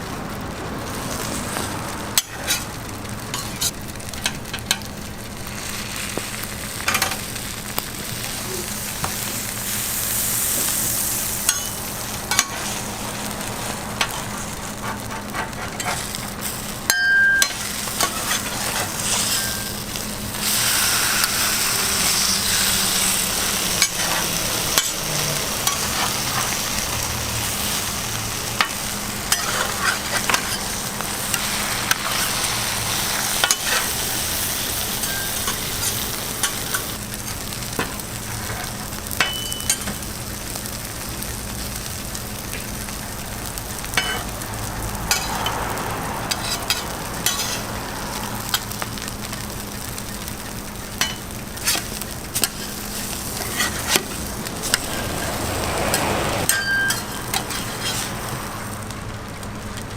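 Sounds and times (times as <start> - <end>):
food sizzling on a griddle: 0.0 - 59.9
metal utensils clicking: 55.9 - 58.1.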